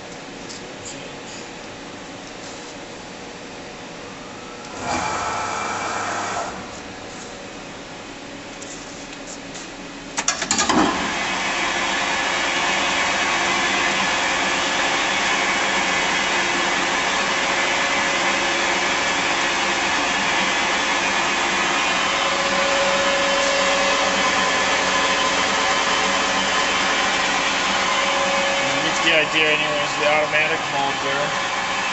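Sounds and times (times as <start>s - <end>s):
lathe whirring and whining: 1.1s - 8.5s, 10.8s - 31.9s
lathe starting clatter: 10.2s - 31.9s.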